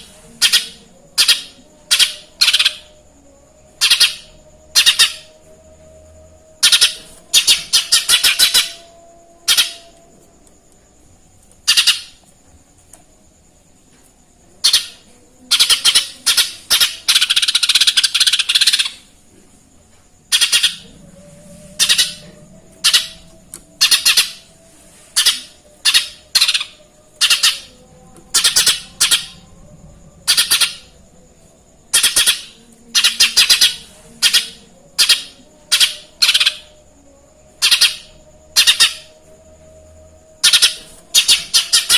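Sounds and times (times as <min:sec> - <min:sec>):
bird singing harsh chirps: 0:00.0 - 0:03.0, 0:03.7 - 0:05.4, 0:06.5 - 0:10.0, 0:11.6 - 0:12.2, 0:14.6 - 0:19.1, 0:20.3 - 0:24.5, 0:25.1 - 0:29.5, 0:30.2 - 0:31.0, 0:31.9 - 0:36.8, 0:37.6 - 0:39.2, 0:40.4 - 0:41.9.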